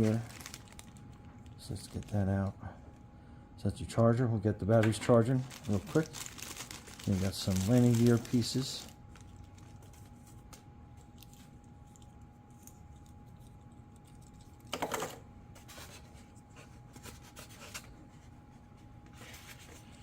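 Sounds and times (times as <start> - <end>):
plastic packaging rustling: 0.0 - 2.5, 4.8 - 12.0.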